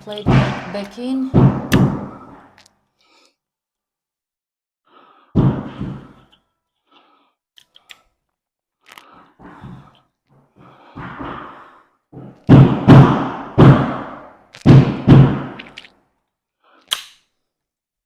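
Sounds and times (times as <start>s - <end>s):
thuds from timber flooring: 0.2s - 2.2s, 12.2s - 14.1s, 14.7s - 15.6s.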